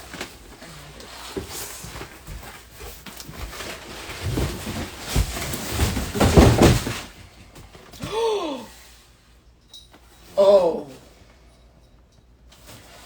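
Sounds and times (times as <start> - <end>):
cardboard box rustling and scraping: 0.2 - 7.2.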